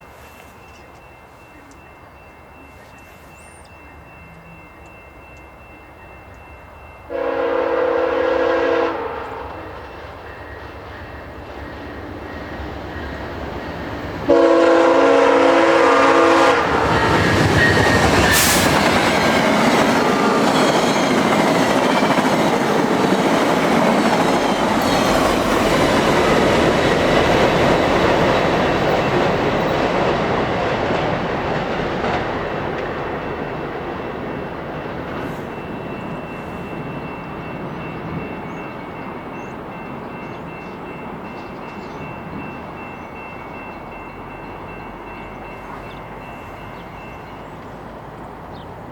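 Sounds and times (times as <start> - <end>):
train rumble: 0.0 - 48.9
train horn blast: 7.1 - 9.8, 14.3 - 18.9
train wheels clattering: 9.7 - 42.6.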